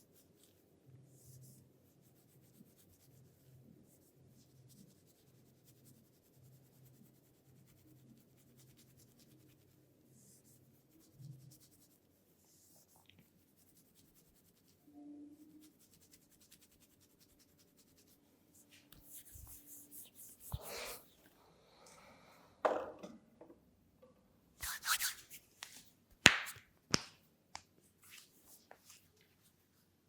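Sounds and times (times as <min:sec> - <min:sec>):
hands rubbing oil through hair: 0:15.6 - 0:21.2, 0:24.6 - 0:27.0.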